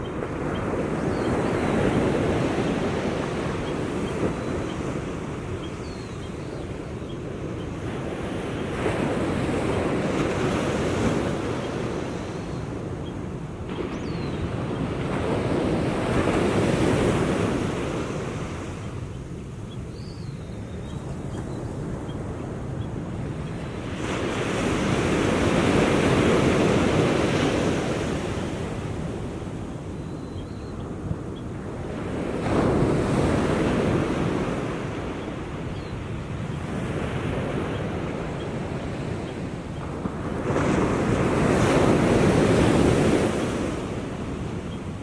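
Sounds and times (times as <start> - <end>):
small waves washing ashore: 30.9 - 45.0.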